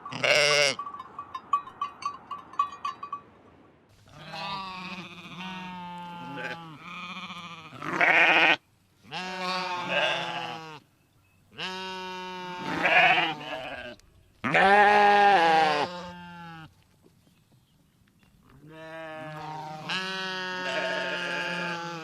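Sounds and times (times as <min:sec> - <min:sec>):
sheep bleating: 0:00.0 - 0:00.8, 0:04.1 - 0:10.8, 0:11.6 - 0:16.7, 0:18.7 - 0:22.0.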